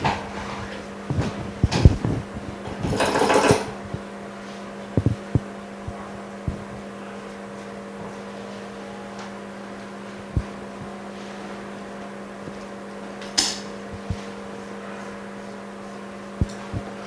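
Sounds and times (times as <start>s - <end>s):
bench equipment humming: 0.0s - 17.0s
small tools clicking and knocking: 2.7s - 3.8s.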